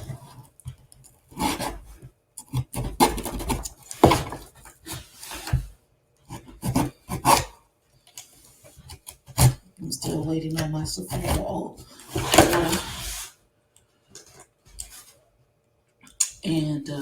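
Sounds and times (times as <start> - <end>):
cardboard box scraping and rubbing: 3.2 - 5.7, 12.0 - 13.4.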